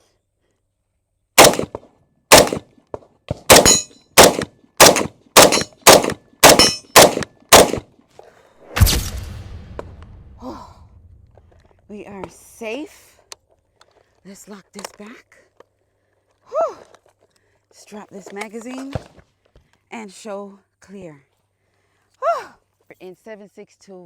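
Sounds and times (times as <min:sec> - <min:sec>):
rifle shots: 0:01.4 - 0:02.7, 0:03.3 - 0:07.9.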